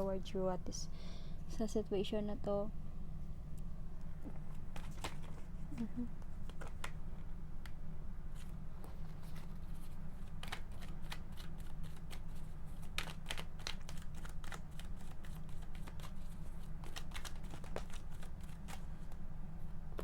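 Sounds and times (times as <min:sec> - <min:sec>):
steady low hum: 0:00.0 - 0:20.0
cards snapping and flicking: 0:04.4 - 0:07.0, 0:10.2 - 0:19.2.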